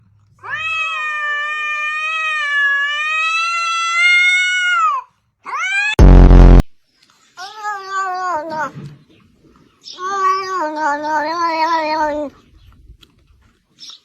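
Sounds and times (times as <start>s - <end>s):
cat yowling: 0.4s - 6.0s
loud harsh burst: 6.0s - 6.7s.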